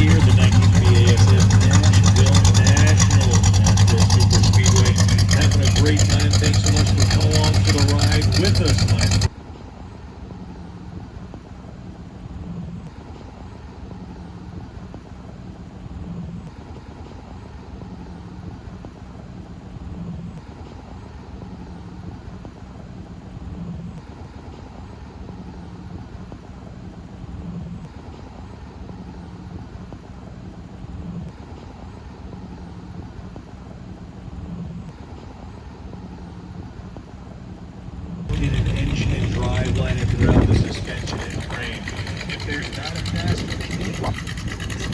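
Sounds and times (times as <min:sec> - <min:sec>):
low mechanical drone: 0:00.0 - 0:09.3, 0:38.3 - 0:44.9.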